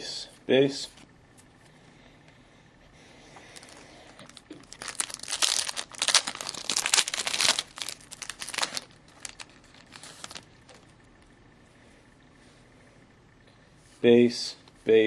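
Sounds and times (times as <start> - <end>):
foil wrapper tearing and crinkling: 3.6 - 10.8.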